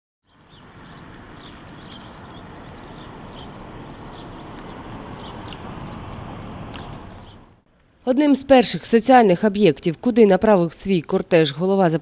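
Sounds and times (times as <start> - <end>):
high bird chirps: 6.7 - 7.5.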